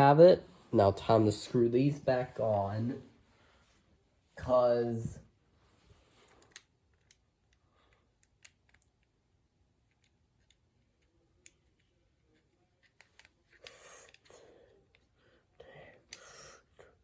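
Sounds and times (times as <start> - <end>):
plastic toy parts clicking: 6.4 - 9.1, 12.8 - 14.3.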